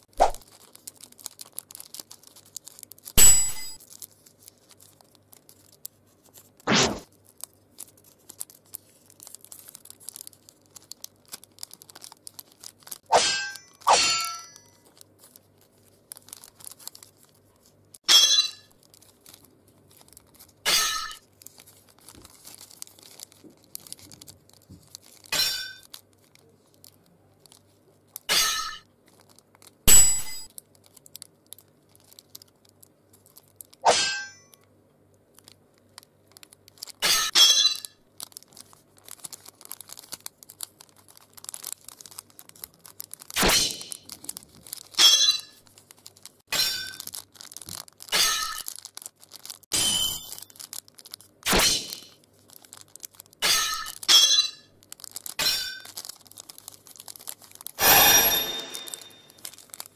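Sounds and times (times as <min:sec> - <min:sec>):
sword metallic clangs: 0:03.2 - 0:03.8, 0:13.1 - 0:14.6, 0:33.9 - 0:34.5, 0:57.8 - 0:59.4.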